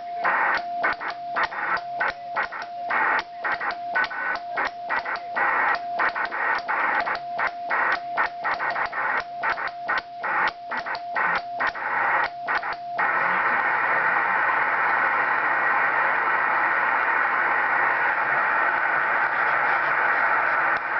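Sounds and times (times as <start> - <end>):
morse code sidetone beeps: 0.0 - 13.1
radio receiver hiss: 0.0 - 20.9.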